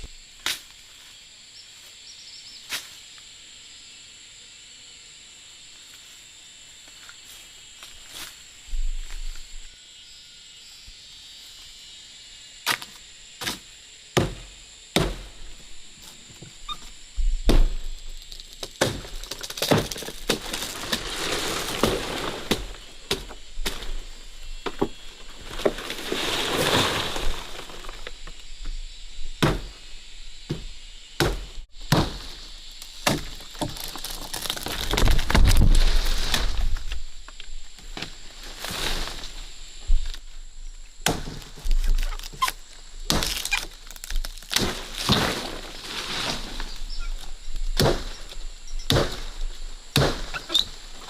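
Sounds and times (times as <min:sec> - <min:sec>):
blade chopping wood: 0:14.2 - 0:15.4, 0:17.4 - 0:24.0, 0:29.4 - 0:29.8, 0:30.5 - 0:36.6, 0:41.0 - 0:45.6, 0:47.7 - 0:49.3, 0:49.9 - 0:50.7
rustling hiss: 0:20.1 - 0:33.8, 0:34.8 - 0:43.0.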